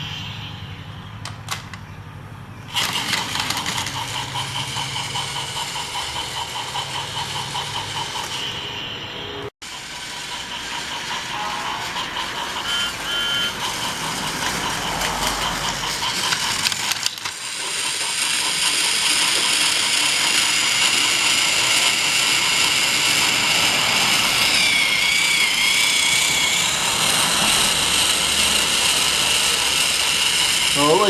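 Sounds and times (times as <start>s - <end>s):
high wavering whine: 0.0s - 1.3s
toy train motor whirring: 2.7s - 8.8s, 9.6s - 31.0s.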